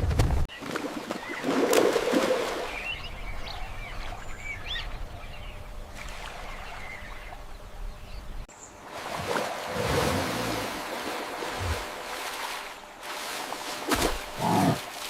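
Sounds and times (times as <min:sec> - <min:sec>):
birds chirping: 0:00.5 - 0:08.9, 0:14.3 - 0:14.9.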